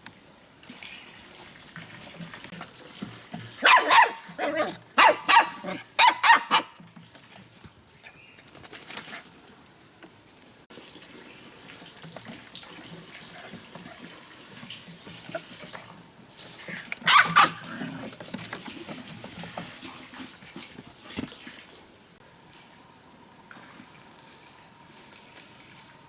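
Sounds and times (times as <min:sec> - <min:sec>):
small rustles and knocks: 0:00.0 - 0:05.9, 0:06.6 - 0:22.8
puppy yelping: 0:03.6 - 0:06.8, 0:17.0 - 0:18.1.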